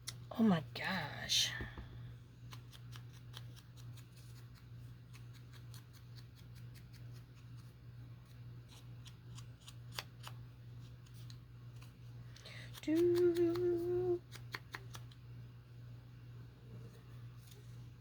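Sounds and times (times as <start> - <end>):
scissors snipping paper: 2.5 - 10.4, 12.7 - 15.2.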